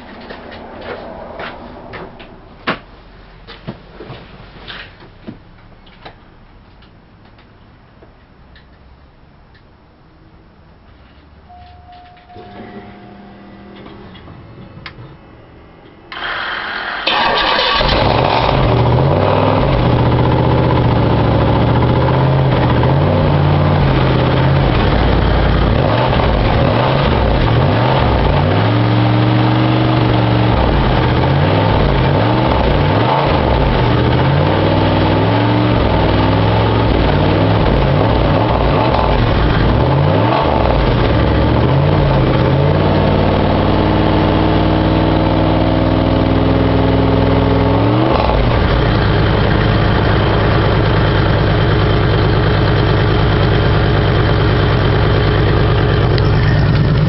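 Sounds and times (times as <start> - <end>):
car engine revving: 16.1 - 57.0.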